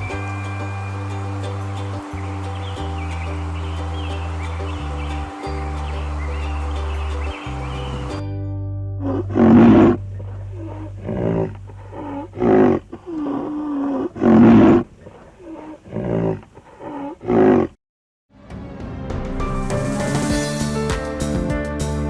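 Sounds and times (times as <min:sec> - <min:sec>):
background music: 0:00.0 - 0:10.9, 0:18.4 - 0:22.0
large animal calling: 0:09.3 - 0:17.8.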